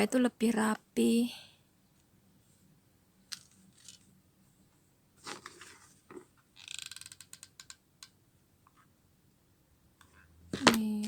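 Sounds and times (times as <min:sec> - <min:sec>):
ratchet-like clicks: 0:06.6 - 0:08.1.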